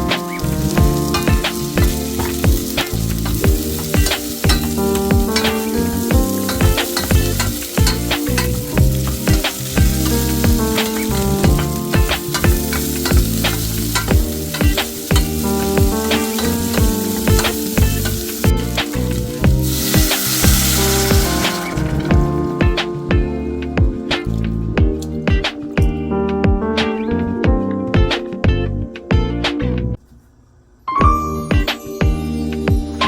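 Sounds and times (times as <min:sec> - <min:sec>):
food sizzling in a frying pan: 0:00.0 - 0:23.3
background music: 0:00.0 - 0:30.0, 0:30.9 - 0:33.0.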